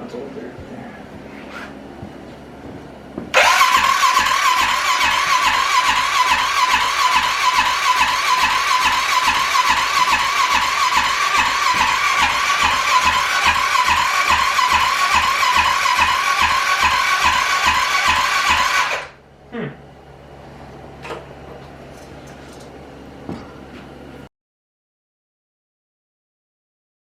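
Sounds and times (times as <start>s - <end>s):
electric starter cranking engine: 3.3s - 19.2s.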